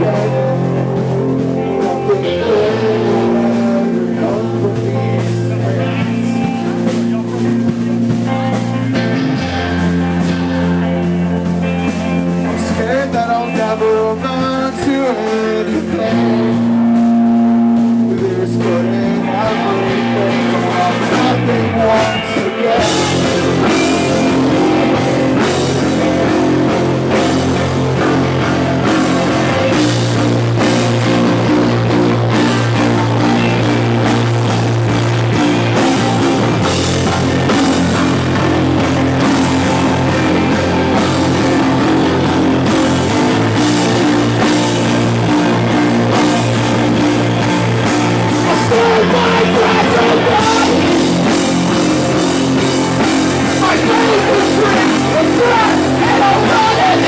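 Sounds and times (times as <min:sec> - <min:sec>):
live rock band playing: 0:00.0 - 0:57.0.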